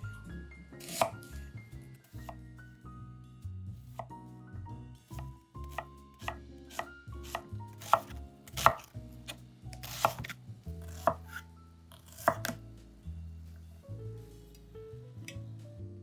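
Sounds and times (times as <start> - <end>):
knife chopping on cutting board: 0.8 - 1.4, 2.1 - 2.4, 3.9 - 4.1, 5.1 - 12.6.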